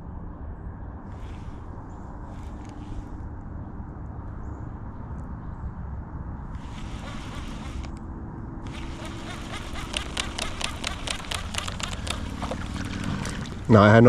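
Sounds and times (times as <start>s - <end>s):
fishing line running off reel: 6.5s - 8.0s, 8.6s - 13.7s
reel cranking clicks: 8.7s - 13.0s.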